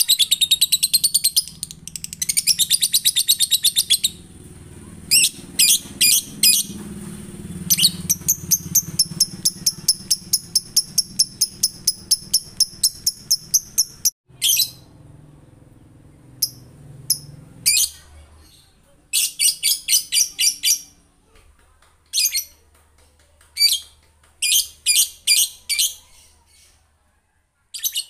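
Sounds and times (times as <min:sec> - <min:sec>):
bird chirping: 0:00.0 - 0:04.3, 0:05.1 - 0:06.8, 0:07.4 - 0:14.9.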